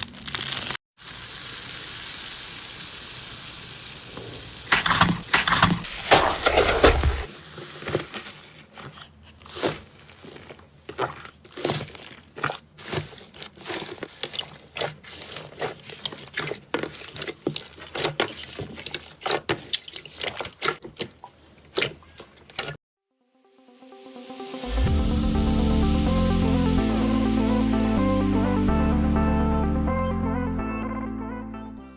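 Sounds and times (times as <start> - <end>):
slime squeezed crackling and popping: 9.5 - 20.8.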